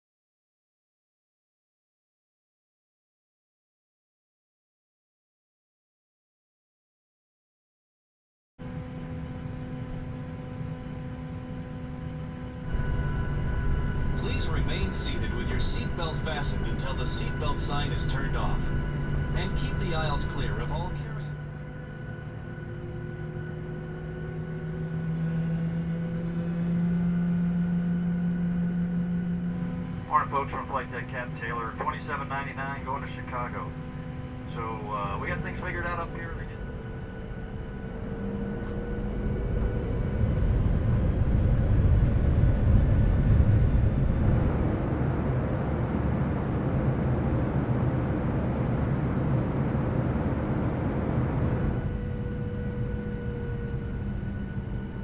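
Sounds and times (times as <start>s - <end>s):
jet engine drone: 8.6s - 55.0s
steady engine whines: 8.6s - 55.0s
faint steady hum: 8.7s - 23.0s, 27.4s - 55.0s.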